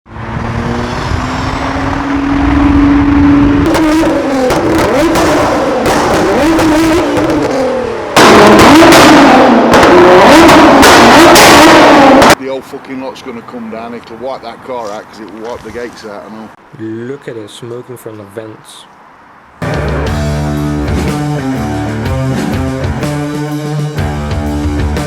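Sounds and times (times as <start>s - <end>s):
car engine revving: 0.1s - 12.4s
exhaust pops and bangs: 3.6s - 12.3s.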